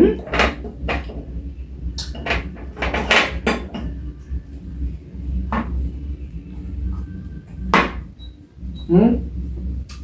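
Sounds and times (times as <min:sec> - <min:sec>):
low steady hum: 0:00.0 - 0:10.0
plates and dishes clattering: 0:00.1 - 0:01.3, 0:02.0 - 0:04.0.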